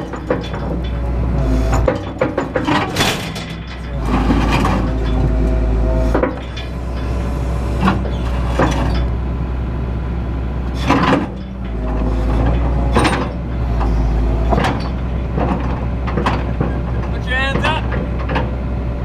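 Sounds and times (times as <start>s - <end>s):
sharp knocks and clunks: 0.0s - 5.4s, 6.1s - 7.1s, 10.8s - 18.6s
excavator engine running: 0.0s - 19.0s.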